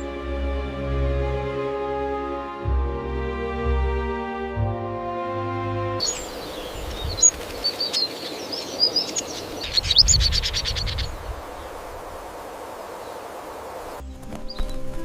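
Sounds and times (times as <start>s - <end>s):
birds chirping: 0.0s - 15.0s
forest ambience hiss: 6.0s - 14.6s.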